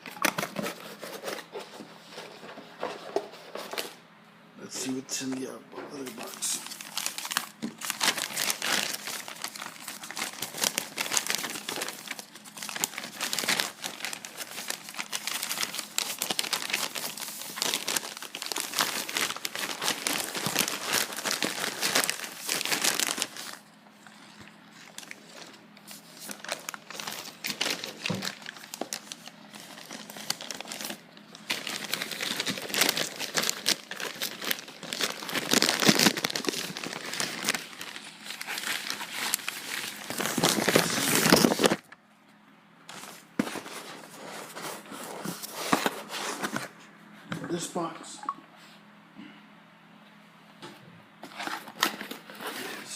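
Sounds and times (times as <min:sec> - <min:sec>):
plastic packaging crinkling and tearing: 0:04.8 - 0:41.9, 0:51.2 - 0:52.9.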